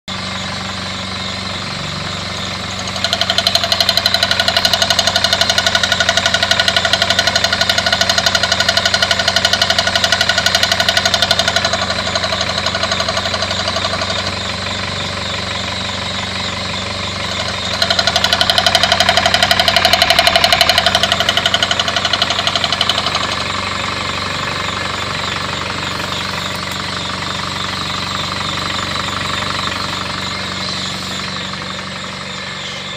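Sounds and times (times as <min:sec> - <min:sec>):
engine running with rapid knock: 0:00.1 - 0:32.9.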